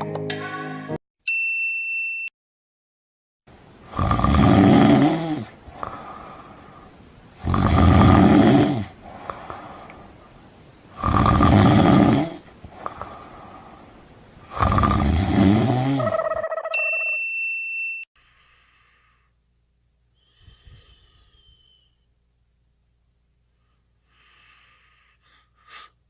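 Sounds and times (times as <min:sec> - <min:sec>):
person snoring: 0:03.9 - 0:09.9, 0:11.0 - 0:13.8, 0:14.4 - 0:16.2
quiet breaths: 0:04.9 - 0:15.8, 0:18.2 - 0:22.4, 0:23.4 - 0:26.0.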